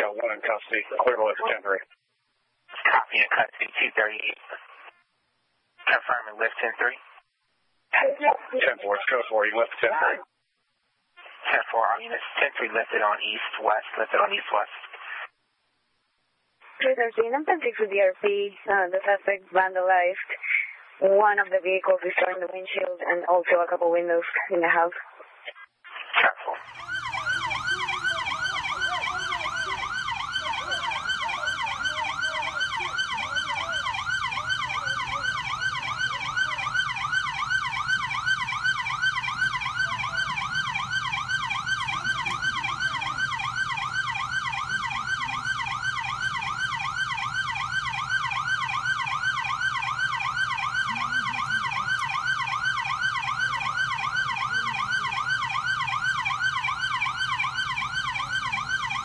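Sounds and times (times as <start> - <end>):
police siren fast yelp: 26.6 - 59.0.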